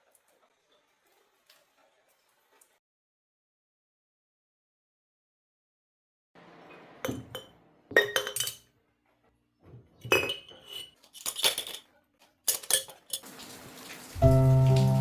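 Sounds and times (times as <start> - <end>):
glass and ceramic kitchenware clinking: 7.1 - 8.7, 10.0 - 11.9, 12.5 - 13.3.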